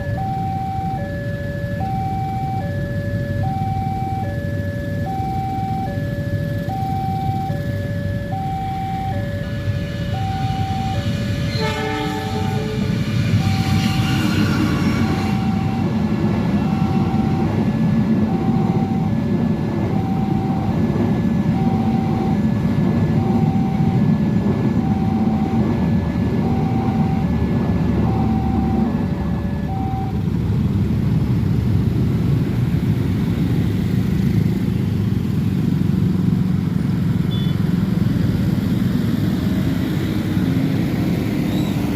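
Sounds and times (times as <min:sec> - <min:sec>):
train rumbling over rails: 0:09.2 - 0:41.9
level crossing bell beeping: 0:16.7 - 0:17.6.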